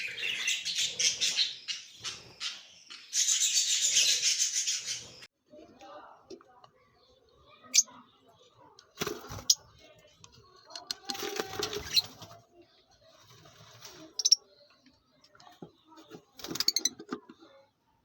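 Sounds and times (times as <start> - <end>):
parrots chattering: 13.9 - 14.5.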